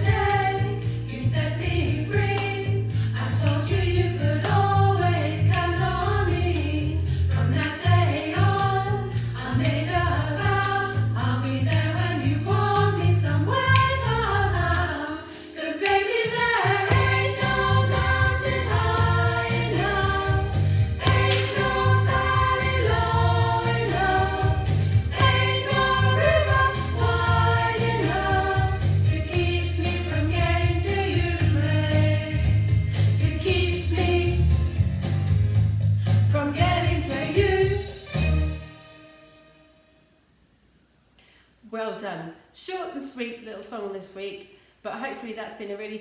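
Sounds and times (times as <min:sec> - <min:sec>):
upbeat song with band: 0:13.7 - 0:38.8.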